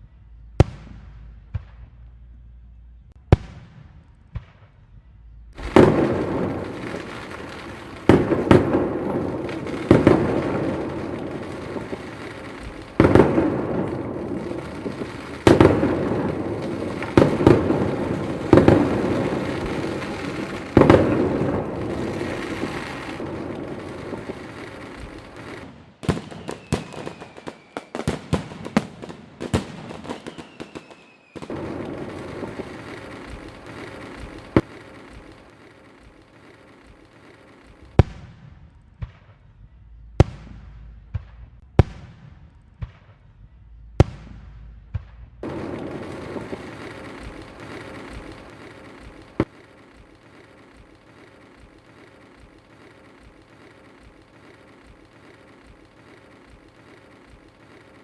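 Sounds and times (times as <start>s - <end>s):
fireworks crackling rumble: 0.0s - 58.0s
fireworks bangs: 3.1s - 58.0s
firework whistle: 5.6s - 38.4s, 45.4s - 58.0s.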